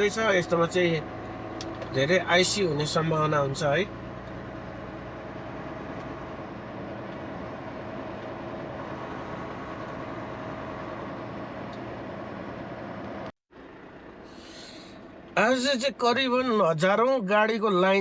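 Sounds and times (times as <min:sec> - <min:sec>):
truck engine humming: 0:00.0 - 0:17.0
road noise: 0:00.0 - 0:18.0.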